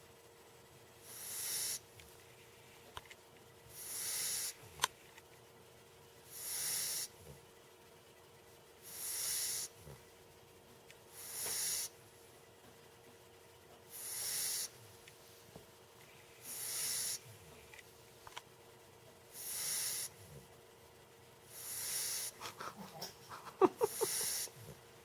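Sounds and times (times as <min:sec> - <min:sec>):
puppy snoring: 0:01.0 - 0:01.9, 0:03.7 - 0:04.6, 0:06.2 - 0:07.4, 0:08.8 - 0:10.1, 0:11.1 - 0:12.0, 0:13.9 - 0:14.8, 0:16.4 - 0:17.4, 0:19.3 - 0:20.6, 0:21.5 - 0:23.1, 0:23.7 - 0:24.8.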